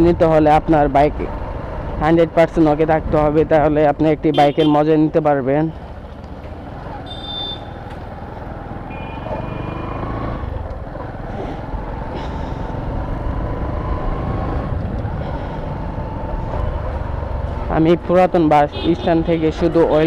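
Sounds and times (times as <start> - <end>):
road traffic rumble: 0.0 - 20.0
vehicle horn blasts: 4.3 - 4.8, 7.0 - 7.8, 8.9 - 9.9.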